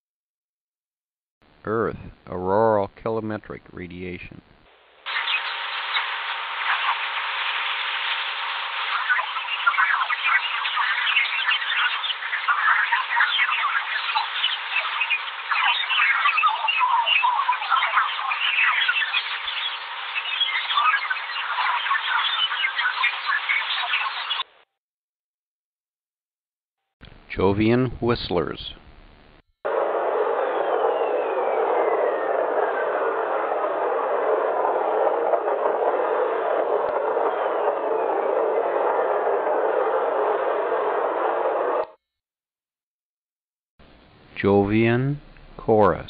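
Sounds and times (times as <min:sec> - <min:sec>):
radio chirps chattering: 0:01.5 - 0:24.6, 0:27.0 - 0:42.0
radio hiss: 0:01.5 - 0:24.6, 0:27.1 - 0:42.0
steady hiss: 0:04.7 - 0:16.7
whistle tone gliding downward: 0:29.7 - 0:42.0.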